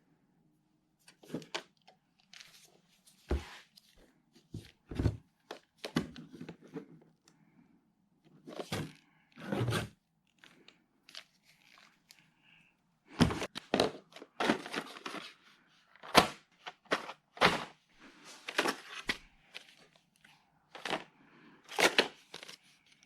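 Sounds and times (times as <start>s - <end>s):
rustling and scraping: 13.1s - 21.1s.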